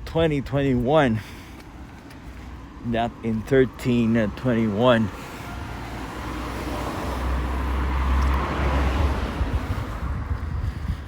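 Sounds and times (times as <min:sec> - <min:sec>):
car driving past: 0:05.4 - 0:10.3.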